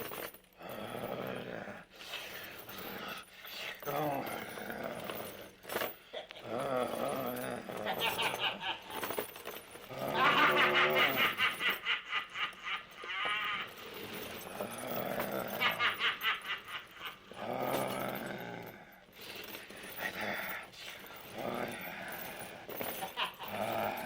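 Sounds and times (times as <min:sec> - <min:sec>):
pulsing cackle-like cries: 0:07.8 - 0:09.2, 0:10.0 - 0:13.8, 0:15.4 - 0:17.3, 0:23.0 - 0:23.8.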